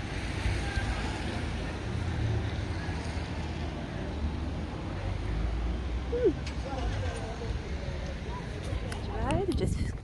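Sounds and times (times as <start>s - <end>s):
wind buffeting microphone: 8.9s - 10.0s.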